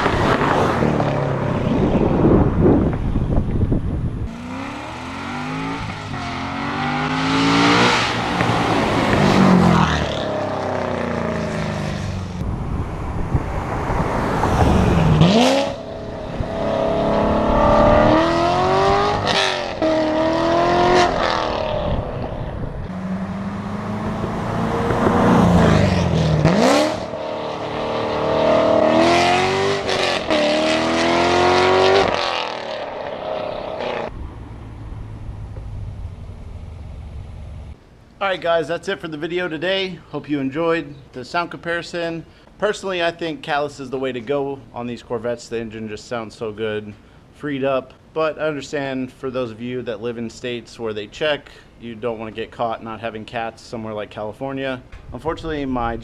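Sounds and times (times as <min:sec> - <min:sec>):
car engine accelerating hard: 0:13.6 - 0:34.1.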